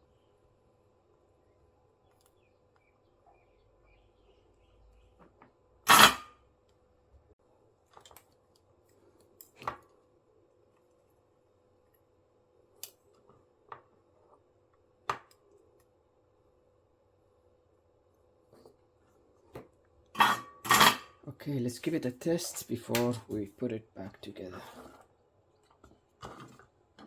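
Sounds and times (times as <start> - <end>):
faint steady hum: 0.0 - 27.0
loud short tool noise: 5.9 - 6.4.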